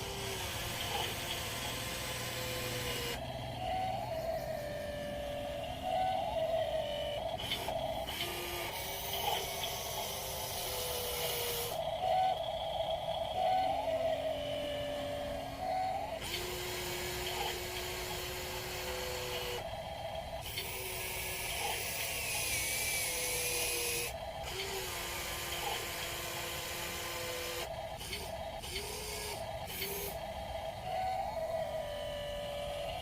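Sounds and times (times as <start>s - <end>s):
electric motors whining: 0.0s - 33.0s
hiss: 20.4s - 30.3s.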